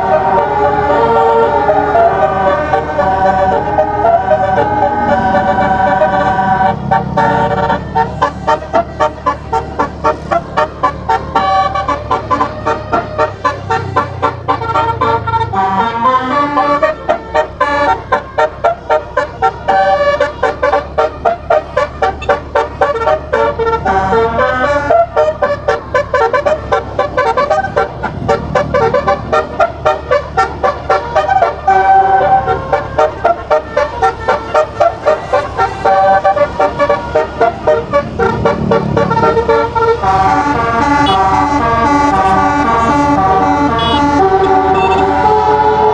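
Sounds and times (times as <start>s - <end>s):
air horn playing fast melody: 0.0s - 45.9s.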